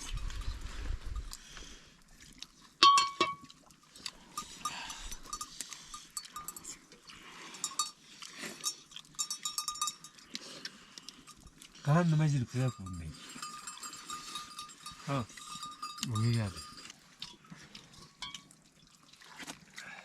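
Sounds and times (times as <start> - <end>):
sheep bells clanking: 2.8 - 3.5, 4.3 - 6.8, 7.6 - 10.2, 11.2 - 16.9.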